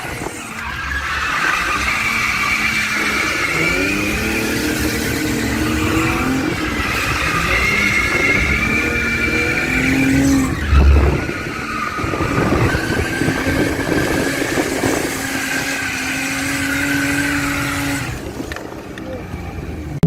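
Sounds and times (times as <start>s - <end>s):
car engines at high revs: 0.0s - 20.0s
tires squealing: 0.0s - 20.0s
heavy low thump: 10.6s - 11.6s.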